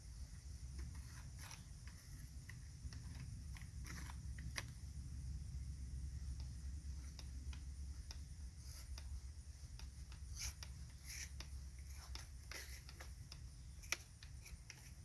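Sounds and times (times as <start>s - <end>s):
low steady hum: 0.0s - 15.0s
light scraping of small objects: 0.7s - 4.8s.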